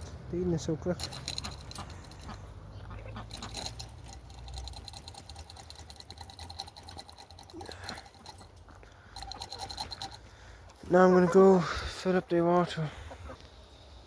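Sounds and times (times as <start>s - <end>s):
chickens pecking at corn: 1.1s - 11.6s.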